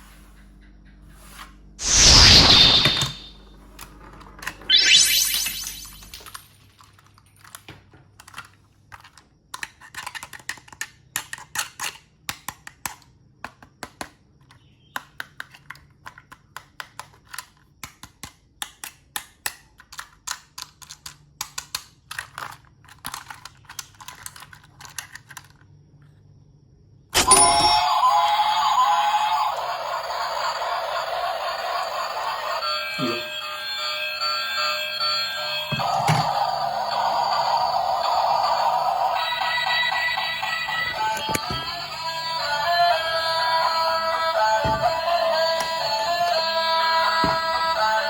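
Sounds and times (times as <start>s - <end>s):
plastic toy parts clicking: 6.2s - 25.7s.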